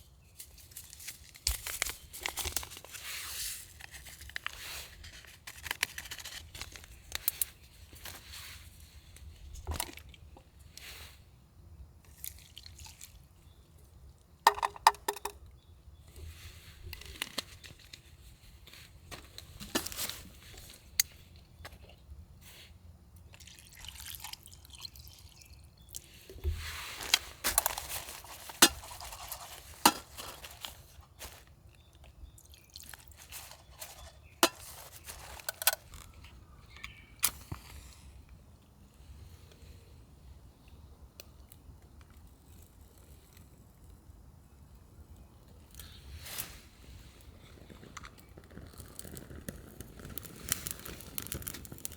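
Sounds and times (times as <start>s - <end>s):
cookware and utensils clinking: 27.5s - 30.7s, 33.4s - 35.8s.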